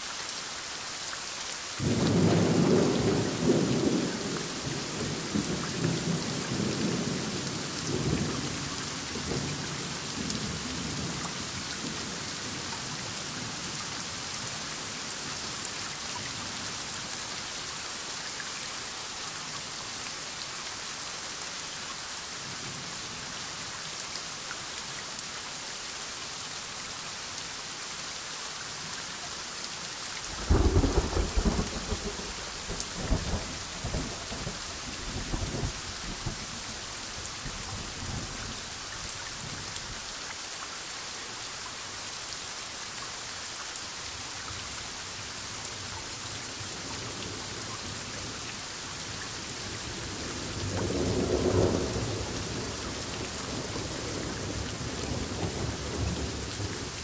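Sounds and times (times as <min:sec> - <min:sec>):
heavy rain: 0:00.0 - 0:57.0
thunder rumbling: 0:30.4 - 0:34.6.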